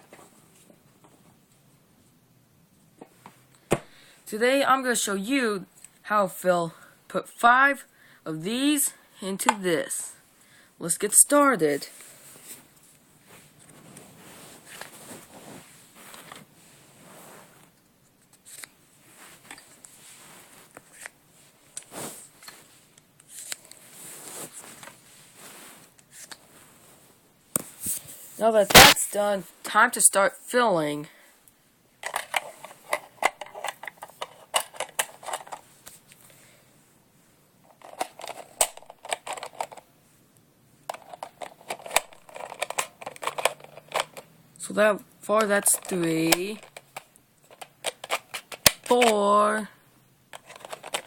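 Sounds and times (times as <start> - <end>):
clicks and scrapes on plastic: 40.9 - 44.3, 45.4 - 49.2, 50.3 - 51.0.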